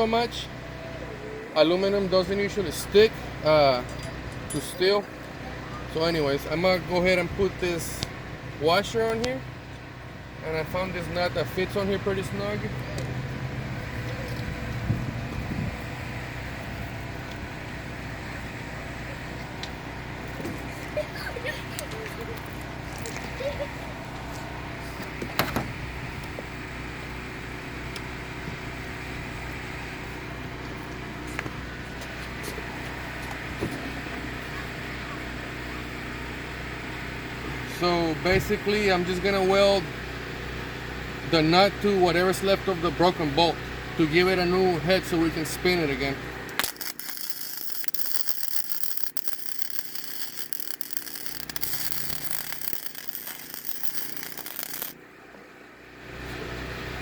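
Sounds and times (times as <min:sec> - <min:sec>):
low machine hum: 0:00.0 - 0:57.0
welder arc crackling: 0:45.4 - 0:55.0.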